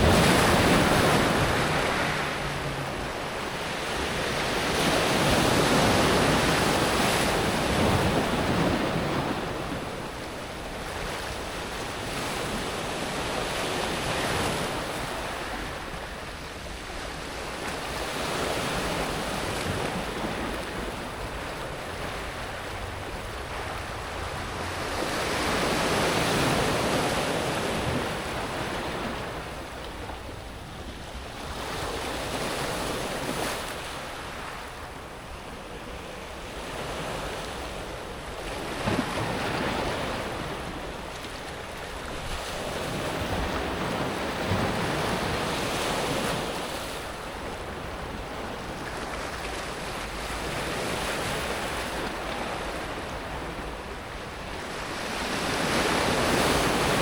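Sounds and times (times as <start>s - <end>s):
waves breaking on pebble beach: 0.0s - 9.8s.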